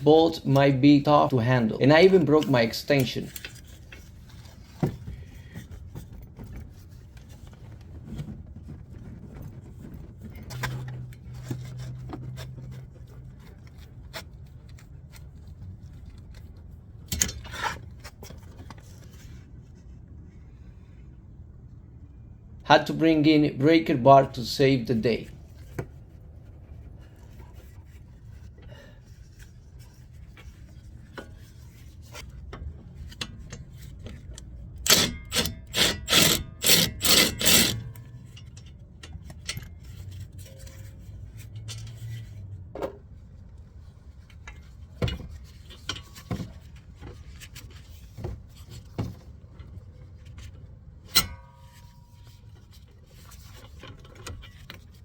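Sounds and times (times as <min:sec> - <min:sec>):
hand tool rasping: 0:34.9 - 0:38.0.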